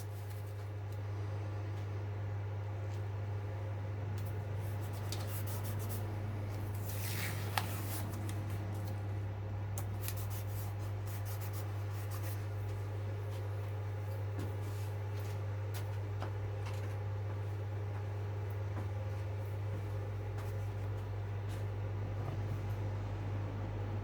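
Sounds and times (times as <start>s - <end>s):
steady low hum: 0.0s - 24.0s
hands rubbing and scraping parts: 4.2s - 9.0s, 9.8s - 12.8s.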